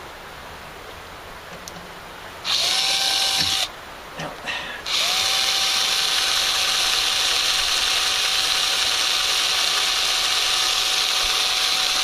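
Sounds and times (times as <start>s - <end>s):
drill boring into metal: 2.5s - 3.7s, 4.8s - 12.0s.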